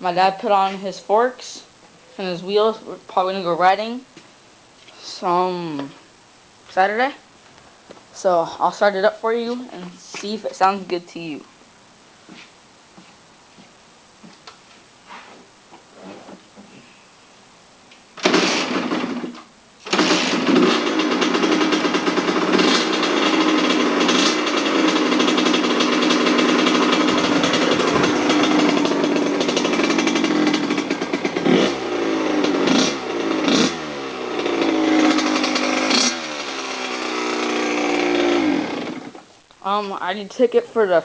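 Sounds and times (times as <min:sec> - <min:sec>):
dirt bike engine starting and revving: 0:18.2 - 0:39.3.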